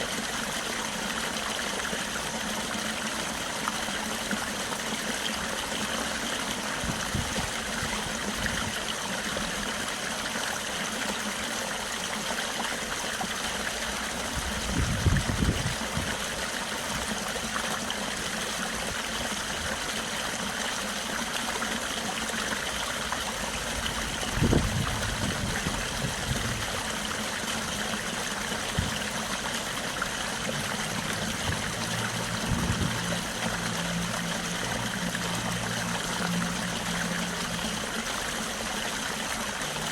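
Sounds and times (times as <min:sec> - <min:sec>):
stream flowing: 0:00.0 - 0:39.9
low engine-like hum: 0:28.8 - 0:39.9.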